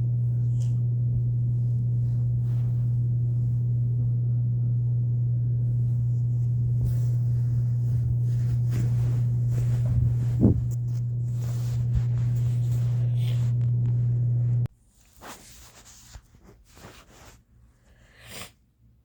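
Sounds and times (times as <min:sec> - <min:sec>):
air conditioner humming: 0:00.0 - 0:18.2
faint rustling: 0:05.2 - 0:17.5.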